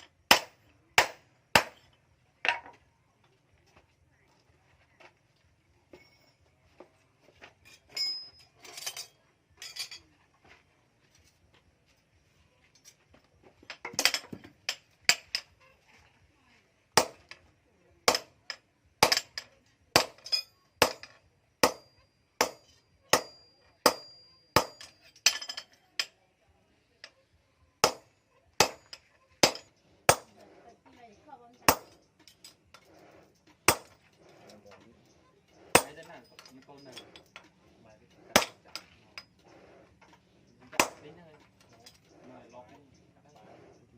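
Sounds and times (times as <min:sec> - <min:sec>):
hammer striking steel on anvil: 0:00.0 - 0:01.9, 0:17.0 - 0:17.4, 0:18.1 - 0:26.2, 0:27.8 - 0:30.5, 0:31.6 - 0:32.4, 0:33.6 - 0:34.5, 0:35.6 - 0:37.5, 0:38.3 - 0:39.4, 0:40.7 - 0:41.1.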